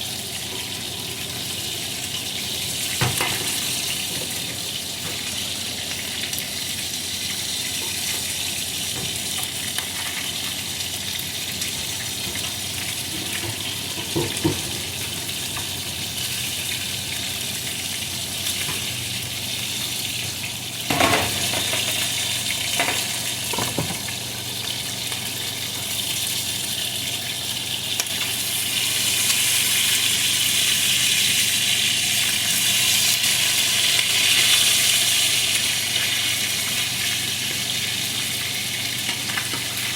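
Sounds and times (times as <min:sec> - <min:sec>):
chicken sizzling in oil: 0:00.0 - 0:39.9
utensils knocking on pan: 0:13.2 - 0:14.8.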